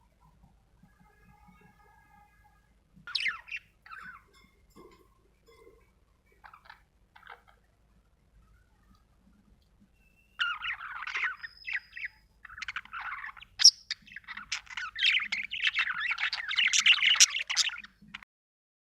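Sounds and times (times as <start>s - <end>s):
budgerigar chirping and warbling: 3.1s - 4.4s, 6.4s - 7.6s, 10.4s - 18.2s.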